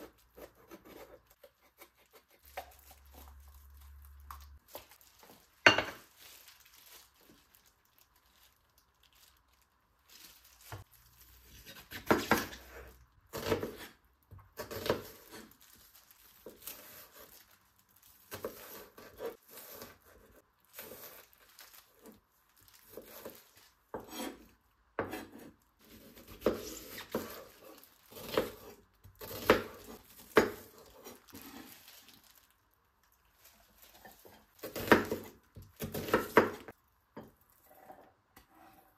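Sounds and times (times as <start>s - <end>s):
rustling: 2.6s - 11.8s, 29.3s - 35.2s.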